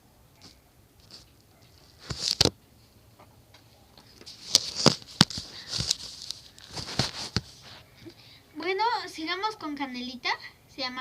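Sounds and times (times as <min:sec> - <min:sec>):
rustling: 0:00.4 - 0:02.5, 0:04.0 - 0:08.0.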